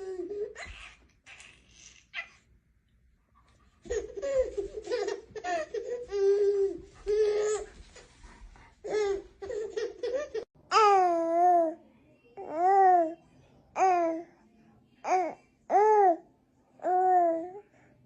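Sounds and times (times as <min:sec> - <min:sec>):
baby laughing: 0:00.0 - 0:02.4, 0:03.8 - 0:08.2, 0:08.8 - 0:10.5
baby squealing: 0:00.0 - 0:02.4.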